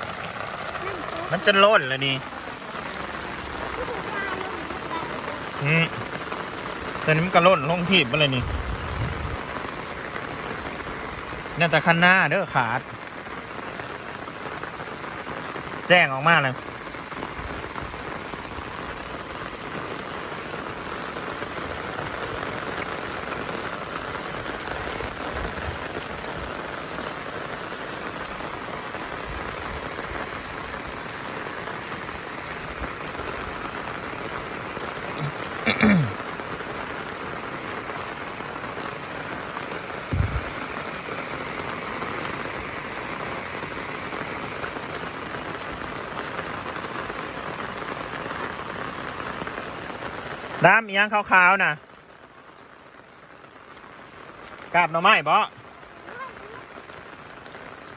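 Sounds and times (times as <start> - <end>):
heavy rain falling: 0.0 - 57.9
low thump: 40.1 - 40.5.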